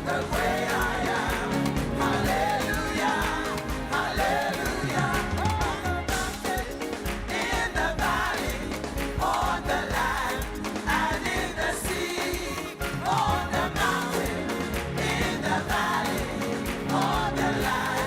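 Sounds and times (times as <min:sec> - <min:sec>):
band playing: 0:00.0 - 0:18.0
voices singing gospel music: 0:00.0 - 0:18.0.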